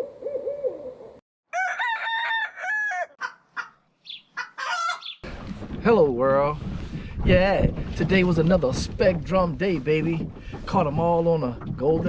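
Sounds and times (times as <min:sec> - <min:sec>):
rooster crowing: 0:01.5 - 0:03.7, 0:04.4 - 0:05.1.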